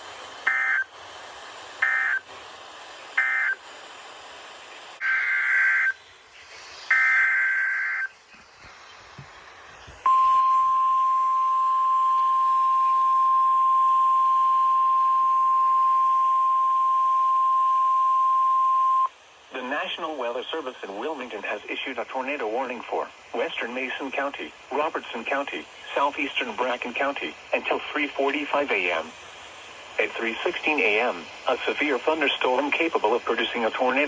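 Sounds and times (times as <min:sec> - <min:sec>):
steady warning alarm tone: 0:00.4 - 0:00.9, 0:01.8 - 0:02.3, 0:03.2 - 0:03.6, 0:05.0 - 0:06.0, 0:06.9 - 0:08.1, 0:10.0 - 0:19.1
raspy data bursts: 0:00.4 - 0:01.0, 0:01.8 - 0:02.3, 0:03.1 - 0:03.6, 0:04.9 - 0:06.0, 0:06.9 - 0:08.2.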